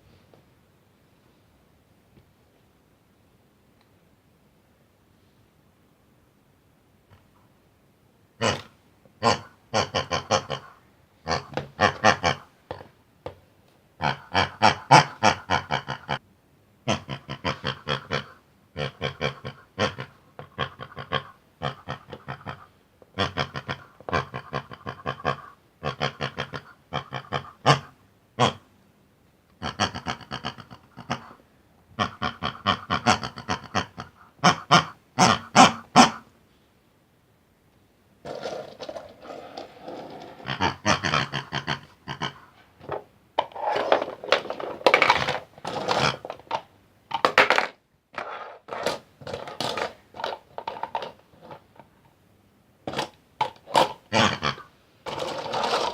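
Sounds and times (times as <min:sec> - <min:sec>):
pig grunting and oinking: 0:08.4 - 0:12.9, 0:14.0 - 0:16.2, 0:16.8 - 0:28.6, 0:29.6 - 0:31.4, 0:32.0 - 0:36.3, 0:38.3 - 0:43.0, 0:43.6 - 0:46.6, 0:52.9 - 0:55.9.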